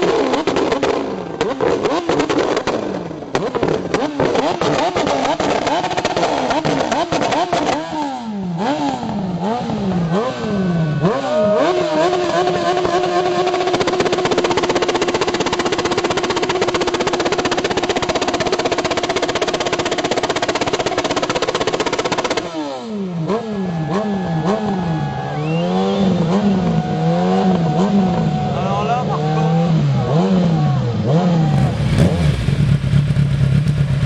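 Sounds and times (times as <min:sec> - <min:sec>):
engine revving: 0:00.0 - 0:34.0.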